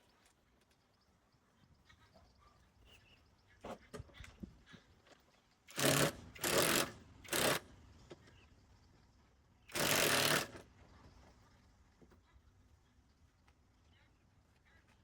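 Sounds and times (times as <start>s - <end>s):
power tool bursts: 5.7s - 7.6s, 9.7s - 10.6s.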